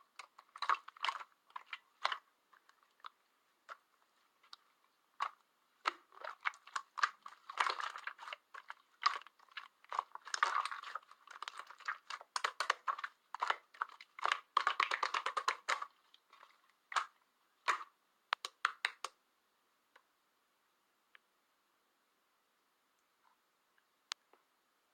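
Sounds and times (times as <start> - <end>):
hands squishing slime: 0.0 - 19.2.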